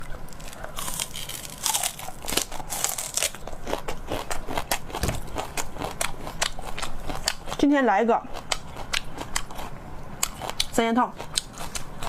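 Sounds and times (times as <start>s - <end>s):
crisp eating crunches: 0.0s - 7.7s.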